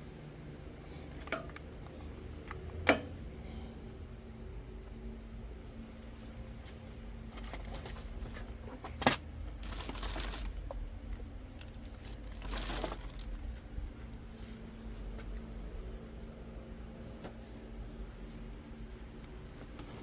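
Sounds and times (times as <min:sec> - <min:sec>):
steady low hum: 0:00.0 - 0:20.0
rustling and crinkling: 0:06.1 - 0:15.6, 0:19.2 - 0:20.0.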